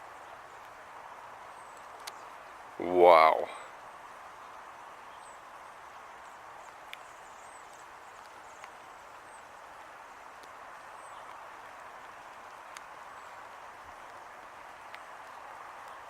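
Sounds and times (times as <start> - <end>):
light rain hissing: 0.0 - 16.0
raindrops tapping on camera: 6.6 - 16.0.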